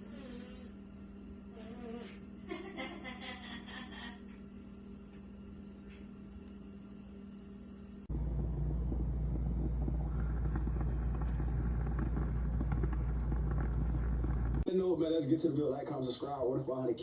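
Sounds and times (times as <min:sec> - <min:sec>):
quiet steady hum: 0:00.0 - 0:14.7
road rumble inside a car: 0:08.1 - 0:14.7.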